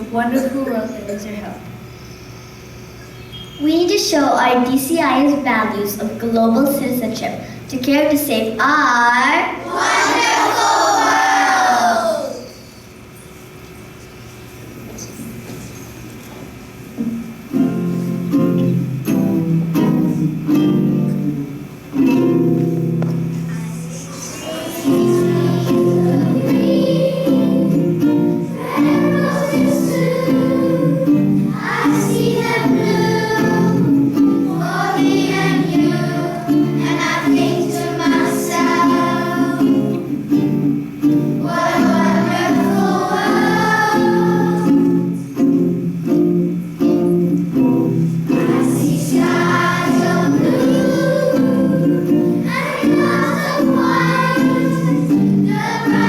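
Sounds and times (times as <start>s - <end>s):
children singing: 9.6s - 12.6s, 23.5s - 40.2s, 41.4s - 45.2s, 48.3s - 56.0s
strummed guitar: 24.4s - 56.0s.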